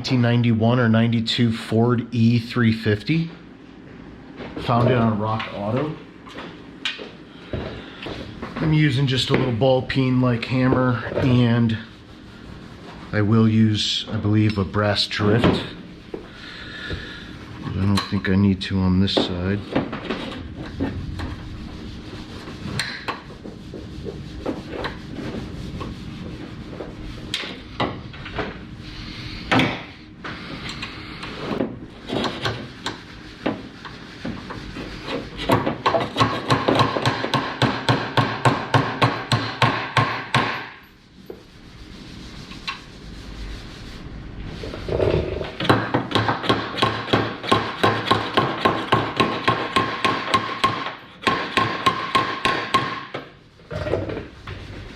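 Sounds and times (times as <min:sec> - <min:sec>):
hammer striking hinge pin: 0:45.6 - 0:53.2.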